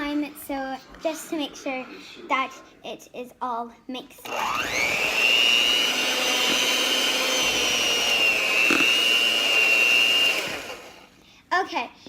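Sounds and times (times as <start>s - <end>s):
electric hand mixer whining: 4.2s - 11.2s.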